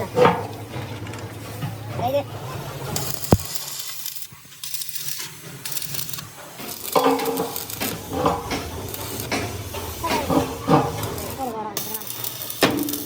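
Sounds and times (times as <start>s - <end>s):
metal clinking on metal: 5.7s - 11.4s.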